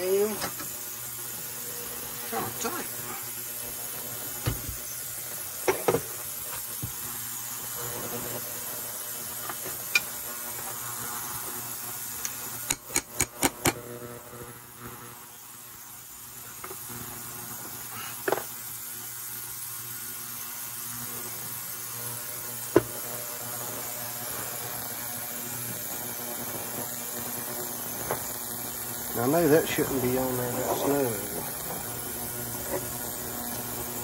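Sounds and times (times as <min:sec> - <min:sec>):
sharp tool clicks: 0:12.2 - 0:13.8
steady hum: 0:20.9 - 0:34.0.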